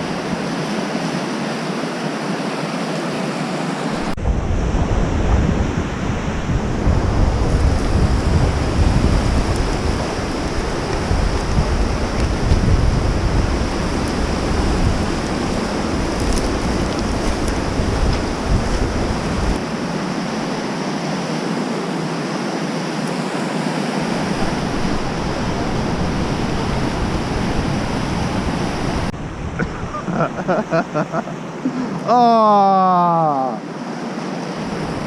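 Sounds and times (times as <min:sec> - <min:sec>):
wind buffeting microphone: 0:04.0 - 0:20.9, 0:23.9 - 0:31.0.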